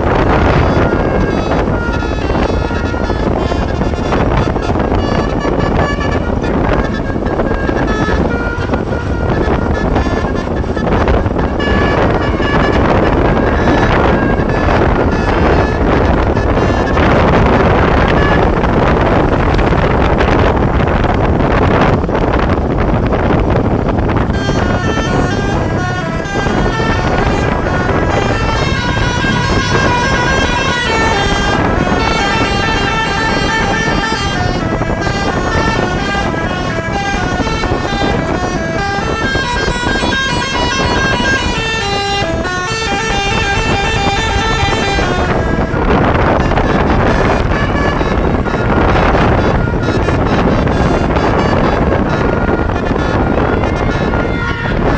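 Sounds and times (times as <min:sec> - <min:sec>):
bus horn note: 0:00.0 - 0:54.9
bus passing: 0:00.0 - 0:54.9
multi-tone horn tune: 0:00.0 - 0:54.9
wind buffeting microphone: 0:00.0 - 0:54.9
loud rushing noise: 0:11.9 - 0:51.4.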